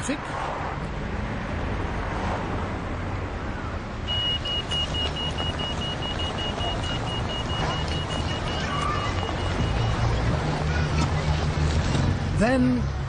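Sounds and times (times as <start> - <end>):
street traffic rumble: 0.0 - 13.0
crossing signal beeping: 4.0 - 10.4.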